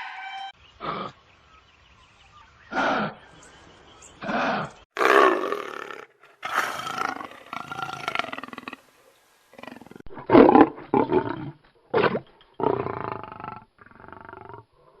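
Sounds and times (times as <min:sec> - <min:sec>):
animal roars: 0:04.2 - 0:08.9, 0:09.5 - 0:15.0.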